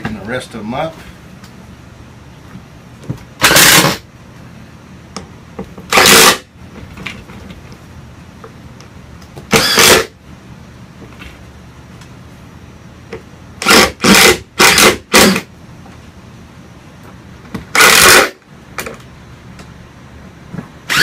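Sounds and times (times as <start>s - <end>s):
cordless power driver running: 3.4s - 4.0s, 5.9s - 6.4s, 9.5s - 10.1s, 13.6s - 15.5s, 17.7s - 18.4s.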